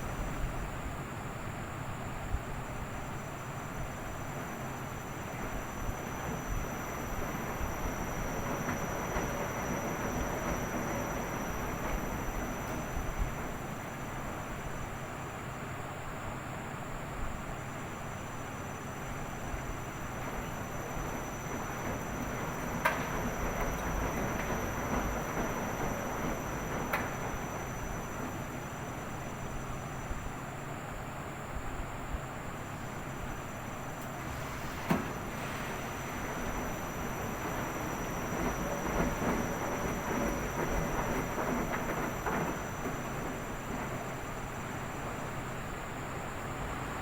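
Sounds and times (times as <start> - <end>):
washing machine running: 0.0 - 47.0.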